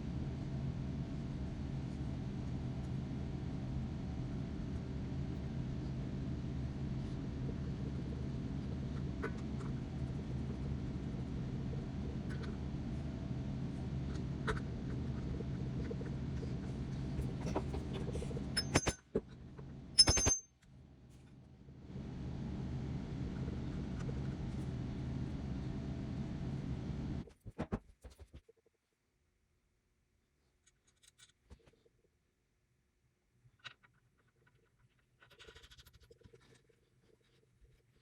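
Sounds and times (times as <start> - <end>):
steady low hum: 0.0 - 27.3
metallic clinks: 20.0 - 20.5.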